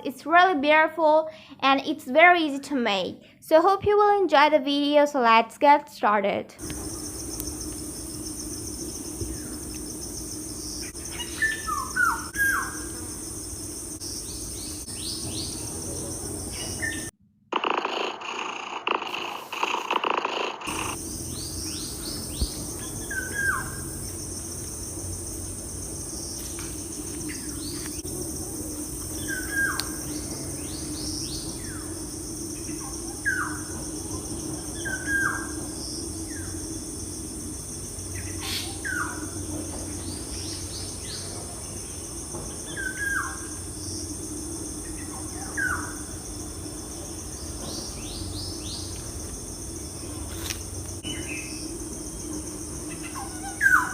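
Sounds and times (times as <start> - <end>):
low hum: 6.6 - 19.6, 20.7 - 42.6
high insect drone: 6.6 - 53.9
birds chirping: 6.7 - 17.1, 20.7 - 36.7, 38.0 - 44.2.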